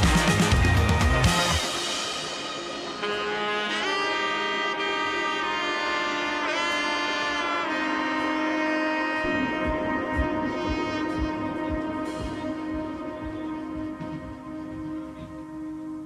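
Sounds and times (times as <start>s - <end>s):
background music held melody notes: 0.0s - 16.0s.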